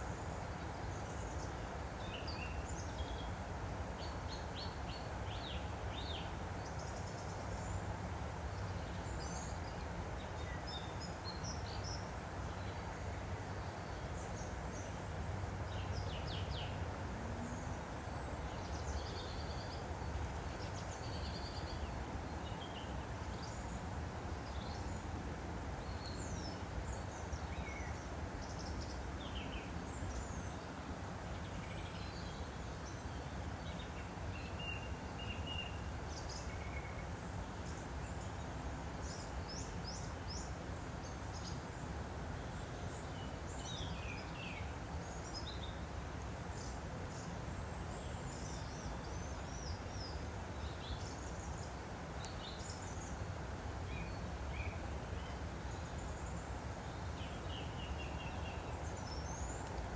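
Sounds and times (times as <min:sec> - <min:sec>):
stream flowing: 0:02.6 - 0:34.3, 0:37.1 - 0:59.9
small birds chirping: 0:53.9 - 0:59.9.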